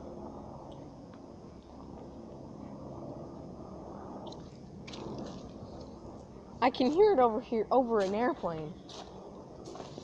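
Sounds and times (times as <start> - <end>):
low rumble: 0.0 - 7.8.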